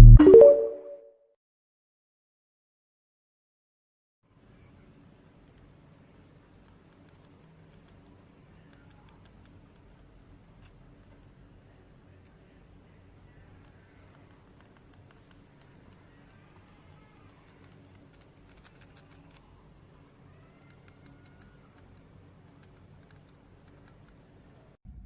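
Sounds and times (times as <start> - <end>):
keyboard keys clicking: 20.7 - 24.2.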